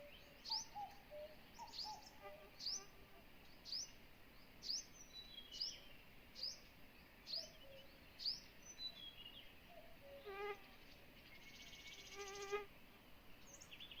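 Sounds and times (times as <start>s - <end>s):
low buzzy bird call: 0.0s - 3.8s, 11.4s - 12.7s.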